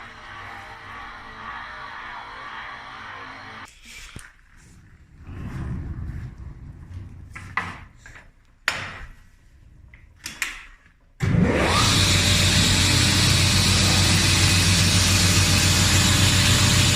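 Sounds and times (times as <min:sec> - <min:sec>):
low rumble: 0:04.8 - 0:08.0
saw motor spinning up and humming: 0:11.2 - 0:16.9.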